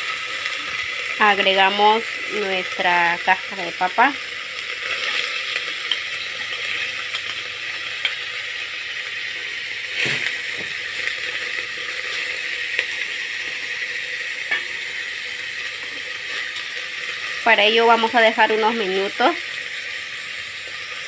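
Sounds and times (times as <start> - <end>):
food sizzling in a pan: 0.0 - 21.0.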